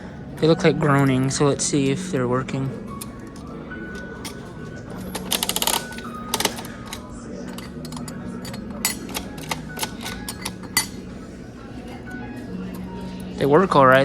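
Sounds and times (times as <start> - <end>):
vending machine crank ratcheting: 2.9 - 11.2.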